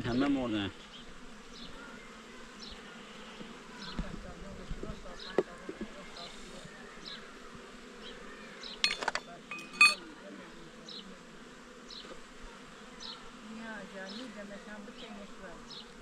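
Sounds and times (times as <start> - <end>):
insects buzzing: 0.0 - 16.0
ringing clink: 8.8 - 10.0.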